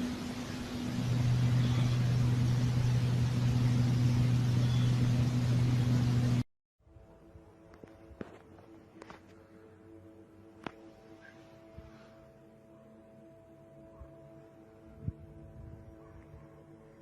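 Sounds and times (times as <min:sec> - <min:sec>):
low droning hum from sky: 0:00.0 - 0:06.4.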